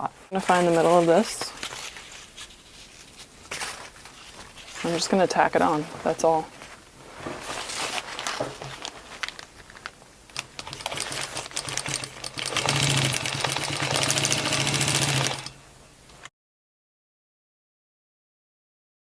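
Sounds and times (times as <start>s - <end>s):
clicks and rustles: 6.6s - 12.2s
sewing machine stitching: 10.4s - 15.5s.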